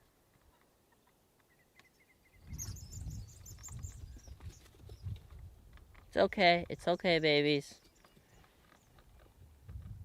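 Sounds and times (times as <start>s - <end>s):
small birds chirping: 0.4s - 9.9s
rapid high bird chirps: 1.5s - 5.1s.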